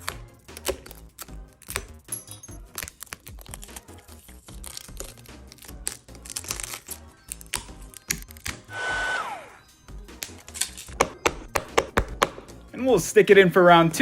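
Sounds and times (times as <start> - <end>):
background music: 0.0 - 14.0
small motor appliance whirring: 8.6 - 9.6
scattered clicks and taps: 10.9 - 12.5.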